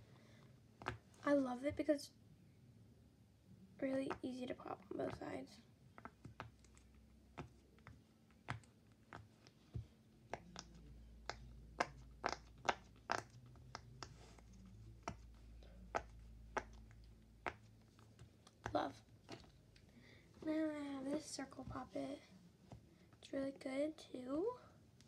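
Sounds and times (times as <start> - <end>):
fidget toy bubbles popping: 10.4 - 13.9.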